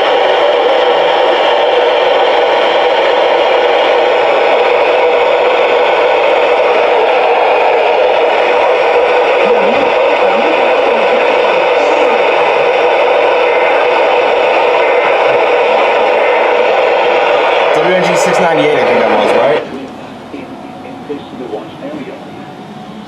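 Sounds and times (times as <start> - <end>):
radio static hiss: 6.7 - 22.2.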